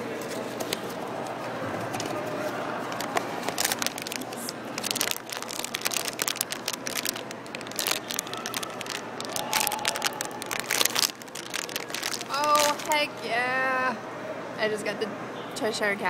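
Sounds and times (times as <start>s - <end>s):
cardboard and foil crinkling: 1.8s - 13.1s.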